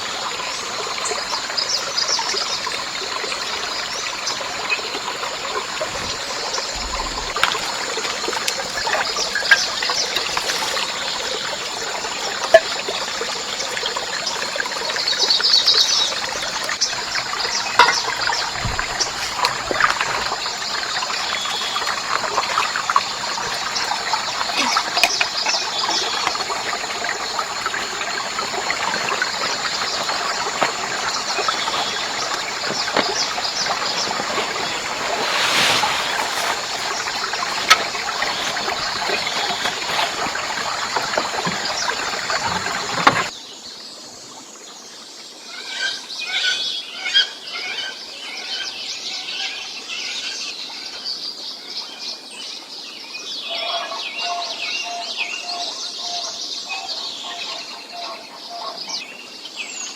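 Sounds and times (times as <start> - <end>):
small crackles and splashes: 0.0 - 43.4
water trickling: 0.0 - 43.4.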